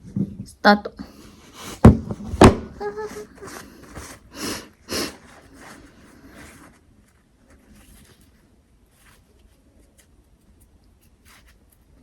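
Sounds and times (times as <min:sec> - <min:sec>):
person sniffing: 0:03.5 - 0:06.6.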